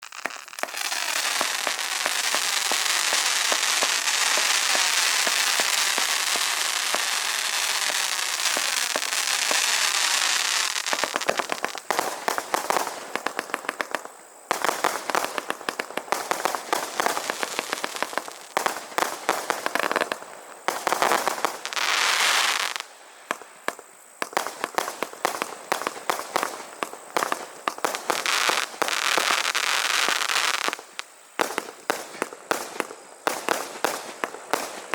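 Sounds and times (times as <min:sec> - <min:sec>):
firework crackling hiss: 0:00.0 - 0:34.9
firework crackling pops: 0:00.0 - 0:34.9.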